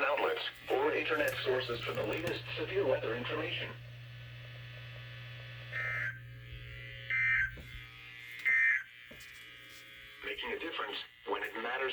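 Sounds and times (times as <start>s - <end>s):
low hum: 0.7s - 8.2s
harsh digital data bursts: 5.6s - 11.9s.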